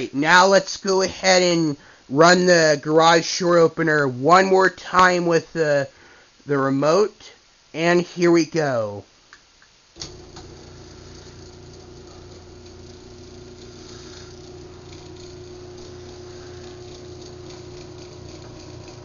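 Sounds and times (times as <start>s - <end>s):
garage door opener motor running: 10.0s - 19.0s.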